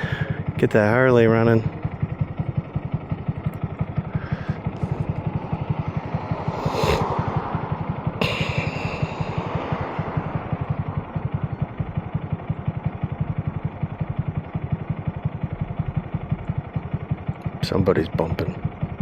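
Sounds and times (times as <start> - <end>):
motorcycle engine idling: 0.0 - 19.0
rush of wind or passing traffic: 4.8 - 11.4.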